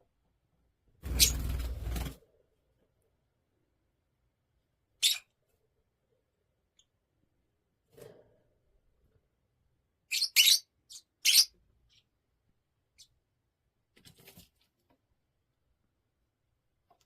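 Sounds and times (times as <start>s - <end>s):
parrot chirping: 5.0s - 5.4s, 10.1s - 12.1s.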